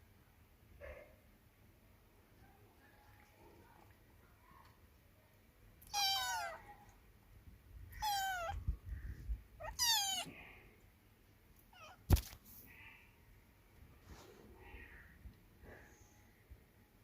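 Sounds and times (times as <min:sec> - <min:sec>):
cat meowing: 0:05.8 - 0:06.7, 0:07.9 - 0:08.6, 0:09.6 - 0:10.4, 0:11.7 - 0:12.1.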